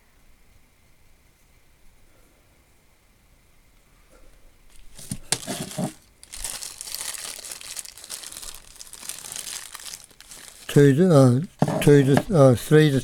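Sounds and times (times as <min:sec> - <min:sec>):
wrapping material crinkling: 0:04.7 - 0:13.0.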